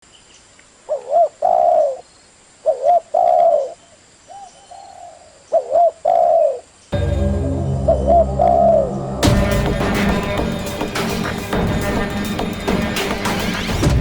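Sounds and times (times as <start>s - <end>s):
dove cooing: 0.9s - 2.0s, 2.7s - 6.6s.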